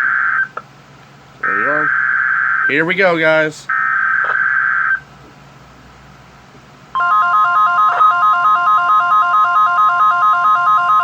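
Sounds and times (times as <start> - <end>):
warbling warning alarm tone: 1.4 - 2.8, 3.7 - 5.0, 7.0 - 11.0.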